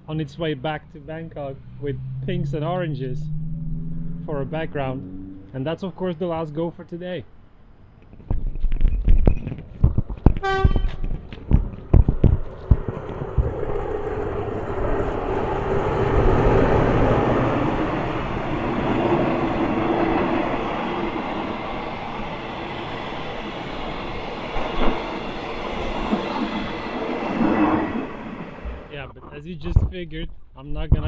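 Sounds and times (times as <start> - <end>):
train wheels rumbling on rails: 8.0 - 29.0
sharp knocks: 9.1 - 14.0
train horn blast: 10.4 - 11.1.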